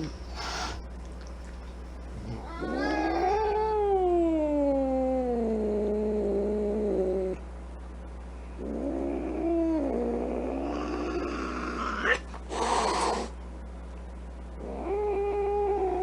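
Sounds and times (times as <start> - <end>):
angry cat yowling: 2.2 - 5.2, 8.8 - 13.3, 14.6 - 16.0.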